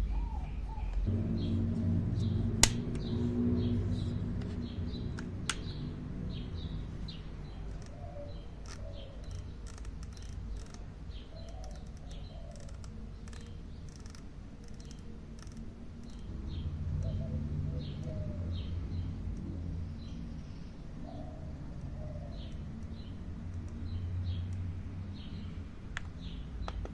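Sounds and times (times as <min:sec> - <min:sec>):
small birds chirping: 0:00.0 - 0:26.9
steady low hum: 0:00.0 - 0:26.9
light clicks: 0:07.4 - 0:16.3.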